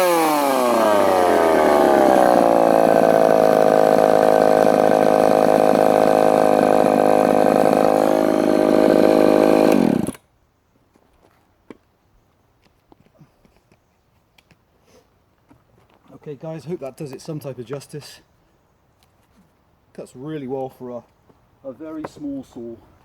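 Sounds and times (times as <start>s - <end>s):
chainsaw engine running: 0.0s - 10.2s.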